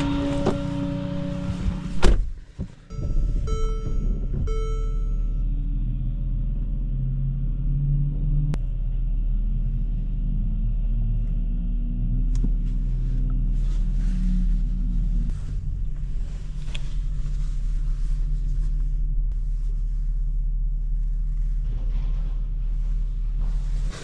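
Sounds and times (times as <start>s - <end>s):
truck engine humming: 0.0s - 9.8s.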